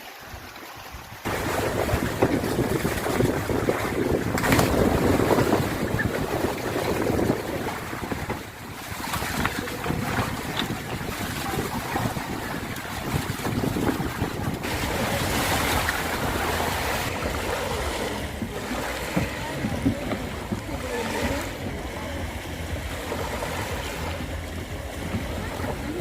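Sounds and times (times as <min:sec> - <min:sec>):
sea water washing: 0:00.0 - 0:26.0
wind buffeting the microphone: 0:00.3 - 0:26.0.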